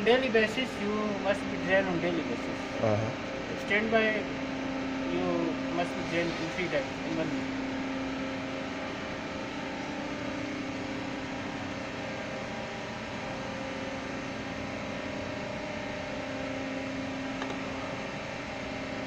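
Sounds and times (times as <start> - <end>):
machinery drone: 0.0 - 4.2.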